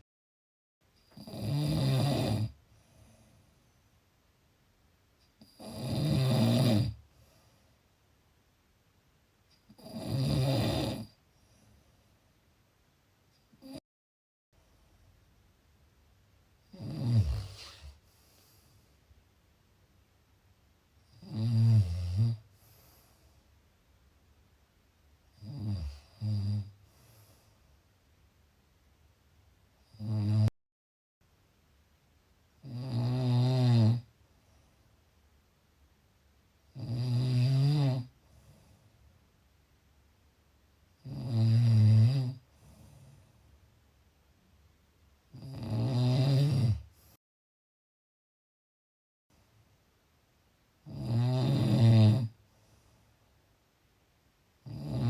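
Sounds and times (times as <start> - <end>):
person snoring: 1.1 - 2.6, 5.4 - 7.0, 9.7 - 11.2, 16.7 - 18.0, 21.1 - 22.4, 25.4 - 26.8, 29.9 - 30.5, 32.6 - 34.1, 36.7 - 38.2, 41.0 - 42.4, 45.3 - 47.0, 50.8 - 52.4, 54.6 - 55.0
quiet breathing: 2.5 - 4.2, 7.0 - 8.2, 11.0 - 12.4, 16.6 - 19.4, 22.2 - 23.8, 25.3 - 28.1, 34.1 - 35.2, 38.1 - 39.3, 42.4 - 43.8, 46.8 - 47.2, 52.3 - 53.5.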